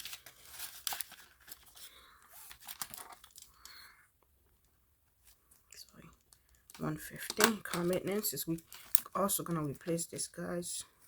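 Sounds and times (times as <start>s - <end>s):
paper banknotes rustling: 0.0s - 3.7s, 6.8s - 10.4s.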